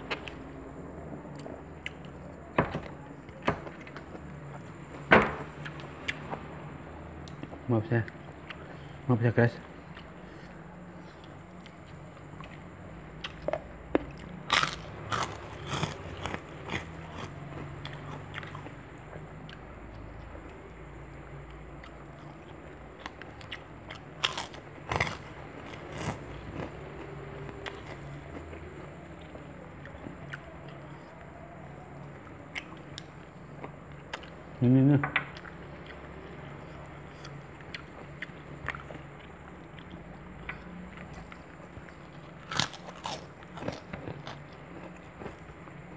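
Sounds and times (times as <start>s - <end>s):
person chewing and crunching: 9.8s - 20.0s, 21.8s - 31.2s, 35.3s - 45.6s
crisp bites: 14.5s - 17.3s.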